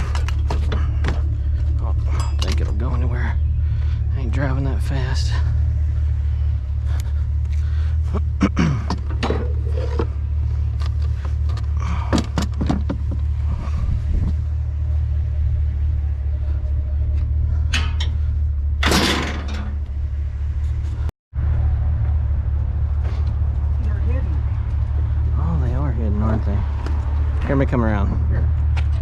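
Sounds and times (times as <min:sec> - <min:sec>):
truck engine and road drone: 0:00.0 - 0:29.0
knocks and rattles: 0:08.8 - 0:13.6, 0:17.0 - 0:20.2.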